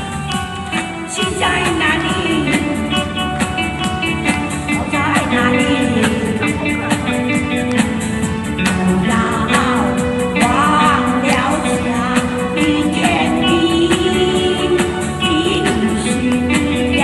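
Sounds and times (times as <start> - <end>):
backing track with steady beat: 0.0 - 17.0
person singing pop song: 0.0 - 17.0.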